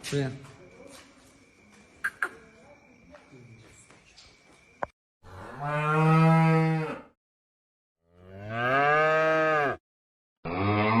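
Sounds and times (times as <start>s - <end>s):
cow mooing: 5.3s - 7.1s, 8.1s - 9.8s, 10.5s - 11.0s.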